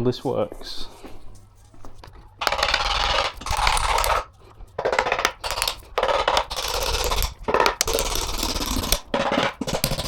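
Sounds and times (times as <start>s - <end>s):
metal tool scraping and clinking: 2.4s - 10.0s.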